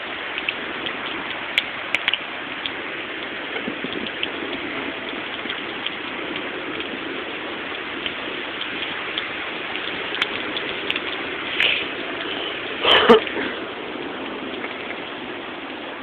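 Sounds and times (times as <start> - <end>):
raindrops ticking close by: 0.0 - 16.0
steady heavy rain: 0.0 - 16.0.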